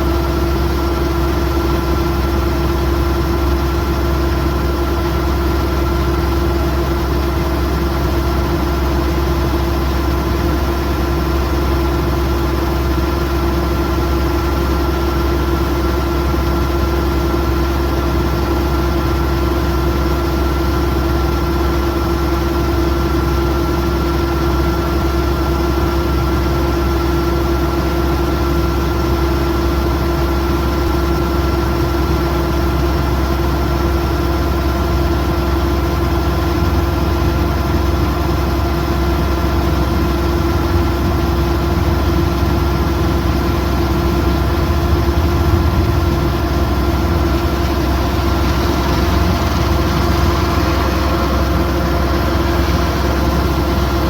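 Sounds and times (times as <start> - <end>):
combine harvester engine drone: 0.0 - 54.0
steady machine whine: 32.5 - 54.0.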